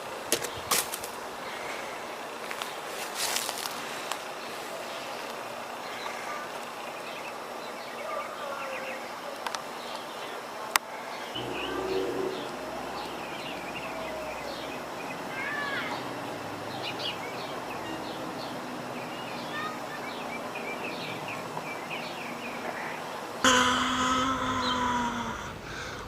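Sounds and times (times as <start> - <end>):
steady background hiss: 0.0 - 26.0
small birds chirping: 11.1 - 23.3
held falling-pitch tone: 11.4 - 14.6.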